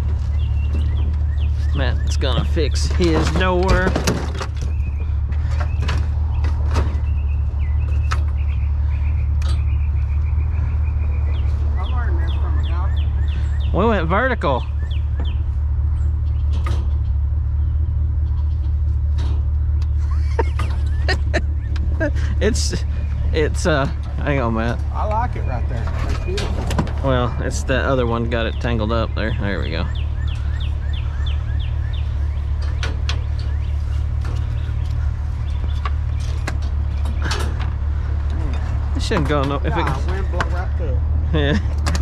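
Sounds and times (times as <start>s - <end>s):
scrap metal knocks and clanks: 0.0s - 7.2s, 18.2s - 21.0s, 22.2s - 28.9s, 31.6s - 40.7s
vehicle engine humming: 0.0s - 42.0s.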